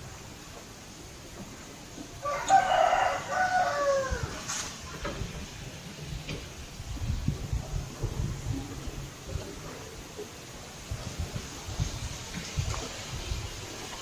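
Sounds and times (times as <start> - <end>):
low wind rumble: 0.0 - 14.0
rooster crowing: 2.2 - 4.5.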